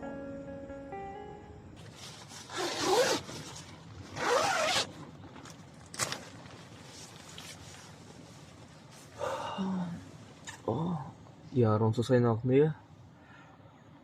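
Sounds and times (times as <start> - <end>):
zipper rasping: 2.3 - 4.9.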